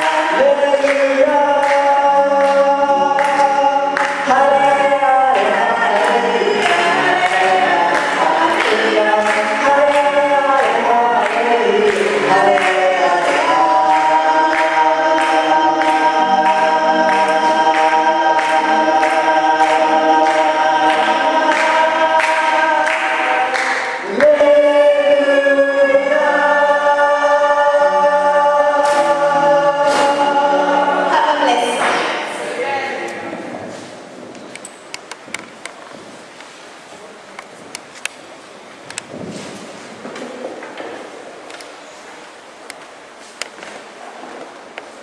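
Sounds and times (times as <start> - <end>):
steady beat: 0.0 - 24.5
choir singing gospel: 0.0 - 34.2.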